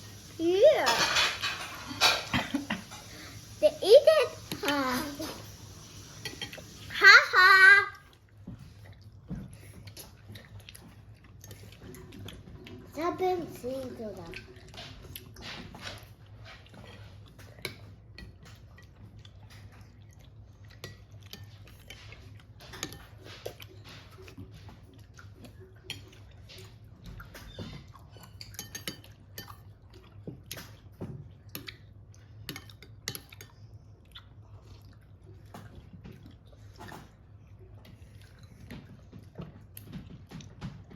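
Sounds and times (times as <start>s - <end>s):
people chewing: 8.1s - 13.0s, 13.8s - 40.9s.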